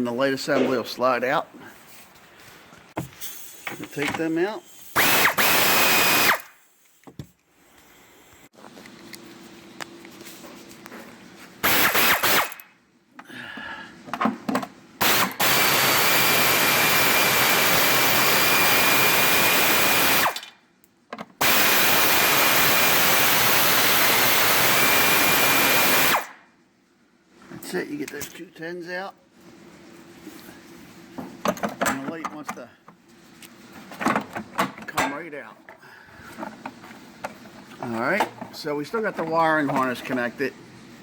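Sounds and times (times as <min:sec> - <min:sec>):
power drill whining: 0:04.9 - 0:06.5, 0:11.7 - 0:12.6, 0:15.0 - 0:20.4, 0:21.4 - 0:26.3.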